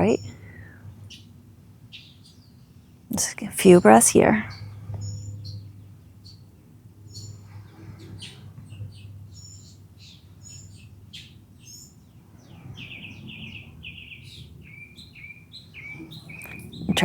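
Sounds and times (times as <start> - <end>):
low steady hum: 0.0 - 1.1, 3.1 - 13.8
birds chirping and singing: 8.0 - 17.0.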